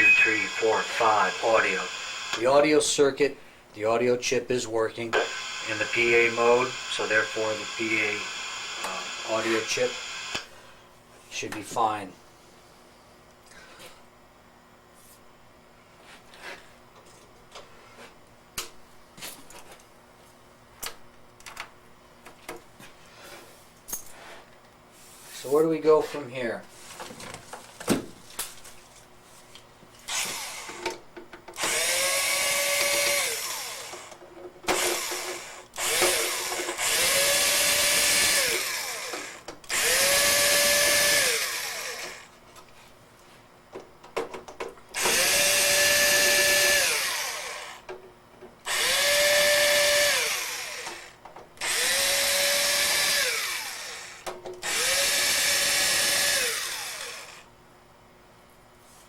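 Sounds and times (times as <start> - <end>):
power drill whining: 0.0 - 2.4, 5.2 - 10.5, 30.1 - 30.8, 31.6 - 42.3, 45.0 - 47.8, 48.7 - 57.4.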